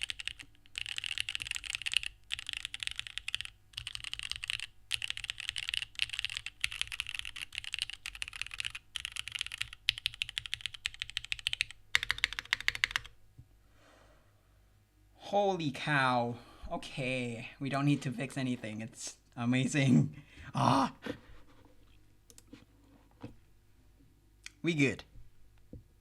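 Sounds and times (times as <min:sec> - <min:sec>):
fast typing on keyboard: 0:00.0 - 0:13.1.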